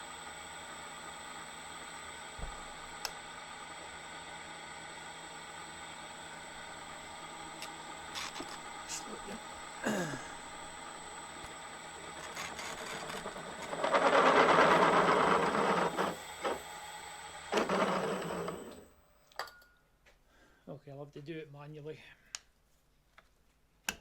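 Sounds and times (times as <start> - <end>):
milling machine spindle running: 0.5 - 18.9
drill bit grinding into steel: 6.9 - 9.4, 10.6 - 16.7, 17.3 - 18.9.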